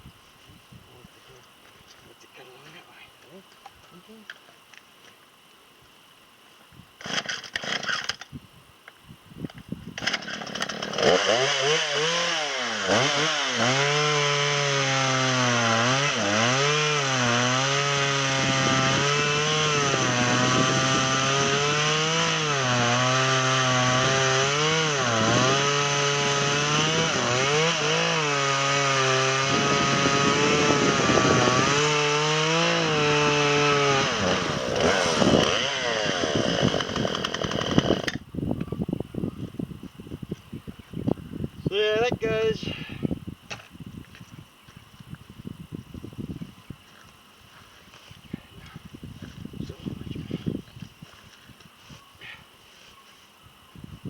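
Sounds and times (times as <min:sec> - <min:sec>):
chainsaw cutting at high throttle: 0:07.0 - 0:08.2, 0:10.0 - 0:38.2.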